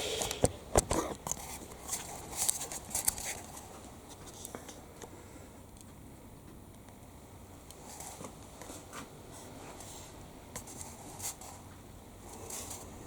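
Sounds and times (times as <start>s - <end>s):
faint clicks and rustles: 0.9s - 6.0s.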